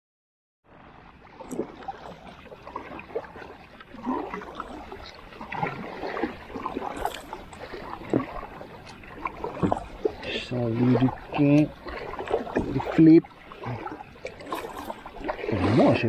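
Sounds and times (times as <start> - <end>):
water splashing against kayak: 0.7 - 16.0.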